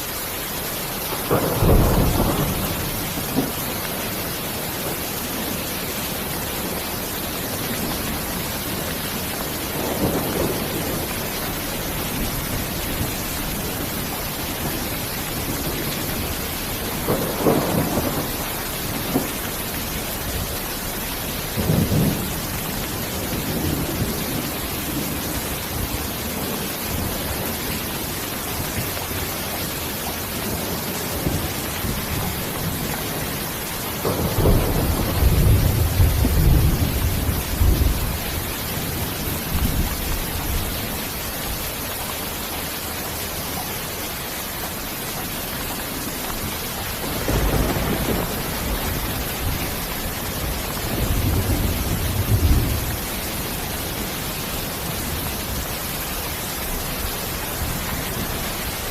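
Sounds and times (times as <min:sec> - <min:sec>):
steady rain hiss: 0:00.0 - 0:58.9
thunder rumbling low: 0:01.1 - 0:04.2, 0:07.5 - 0:27.6, 0:30.8 - 0:40.8, 0:46.4 - 0:54.1.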